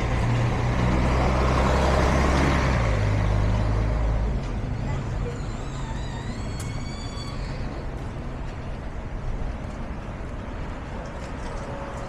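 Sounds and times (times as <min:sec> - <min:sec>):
rumble of passing vehicles: 0:00.0 - 0:12.0
brief high-pitched squeal: 0:05.1 - 0:07.8.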